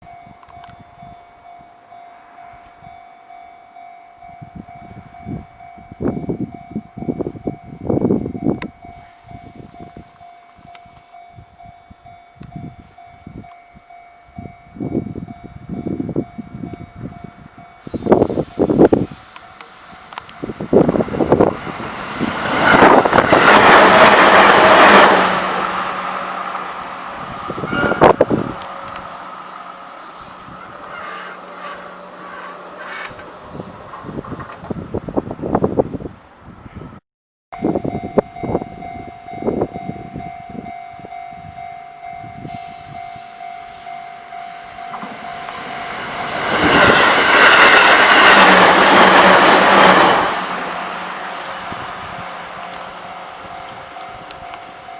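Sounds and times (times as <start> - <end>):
level crossing warning bell: 0.0 - 32.8, 37.6 - 54.9
train wheels clattering on rails: 18.1 - 26.7, 30.6 - 34.8, 44.8 - 51.2
vehicle passing close by: 20.4 - 34.5, 44.9 - 54.8.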